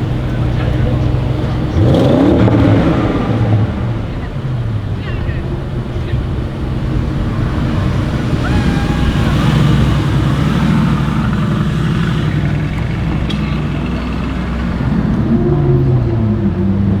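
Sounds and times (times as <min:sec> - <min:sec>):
car engine through loud exhaust: 0:00.0 - 0:17.0.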